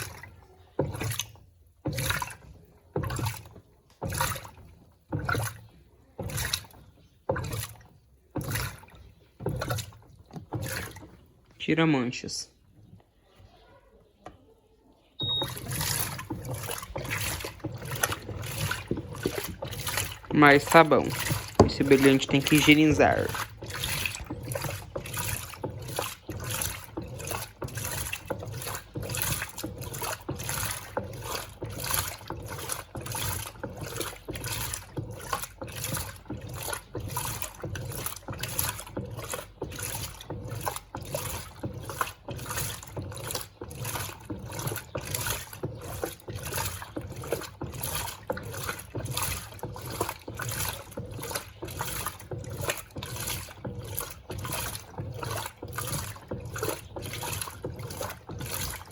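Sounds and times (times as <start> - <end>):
washing machine sloshing: 0.0 - 58.9.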